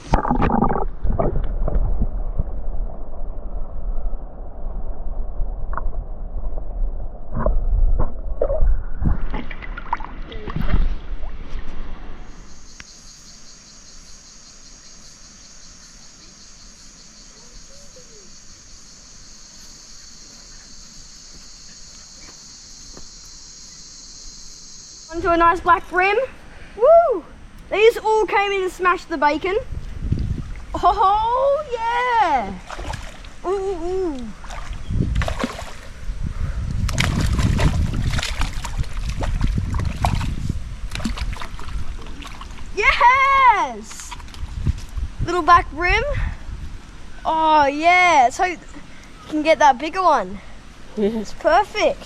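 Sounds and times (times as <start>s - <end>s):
water splashing in a creek: 0.0s - 4.0s, 5.7s - 12.3s, 31.6s - 45.0s
low rumble on the microphone: 0.0s - 12.4s, 29.6s - 42.8s, 44.0s - 47.3s
insects chirring: 12.2s - 52.0s.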